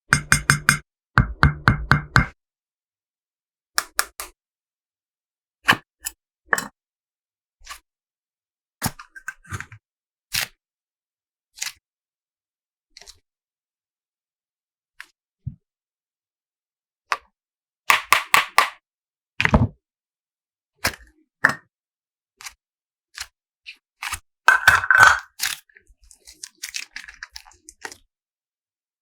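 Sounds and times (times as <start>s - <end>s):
slime and plastic toys crackling: 24.7s - 28.0s.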